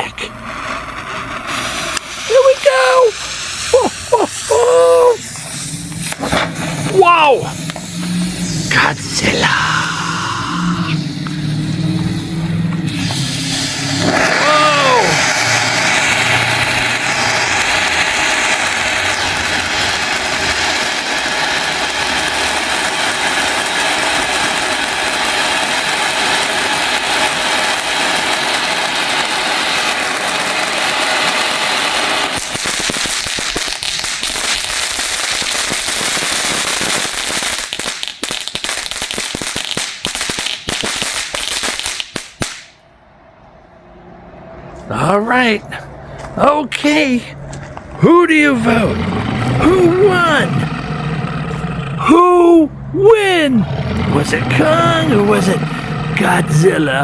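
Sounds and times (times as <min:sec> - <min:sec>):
firework hissing: 0:00.0 - 0:42.8, 0:48.2 - 0:57.0
firework sputtering crackles: 0:00.0 - 0:42.9, 0:46.2 - 0:57.0
firework whistle: 0:00.3 - 0:42.9.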